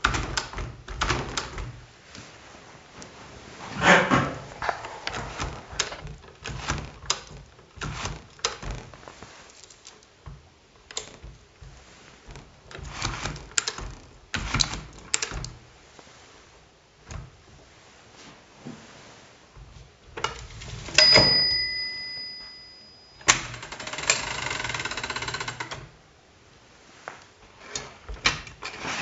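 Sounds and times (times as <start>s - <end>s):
manual typewriter clacking: 0.0s - 1.8s, 4.8s - 9.0s, 12.3s - 15.6s, 23.2s - 25.9s.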